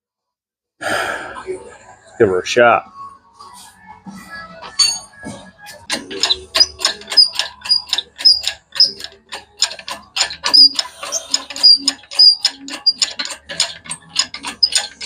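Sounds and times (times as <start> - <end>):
metallic ratcheting click: 5.9 - 15.0.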